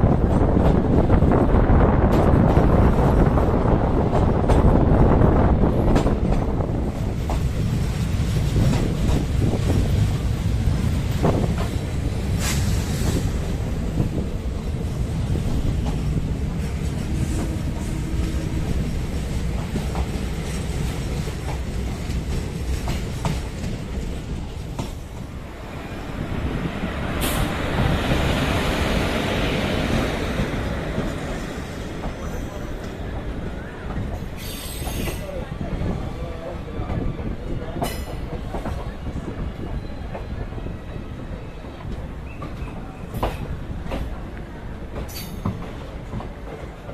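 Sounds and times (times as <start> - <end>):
train rumbling on rails: 0.0 - 46.9
train wheels clicking: 5.7 - 25.6, 26.6 - 35.4, 37.7 - 40.5, 41.7 - 46.9
wheel and rail hiss: 7.2 - 36.3.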